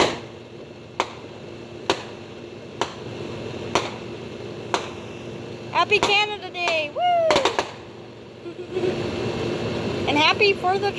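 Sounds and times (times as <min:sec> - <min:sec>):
fireworks sharp bangs: 0:00.0 - 0:05.1, 0:05.8 - 0:08.0.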